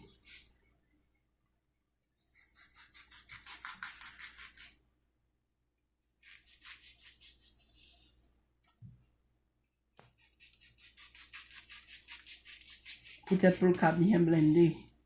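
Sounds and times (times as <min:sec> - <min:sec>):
knife sawing through food: 0:02.2 - 0:04.8, 0:06.2 - 0:07.8, 0:10.2 - 0:14.9.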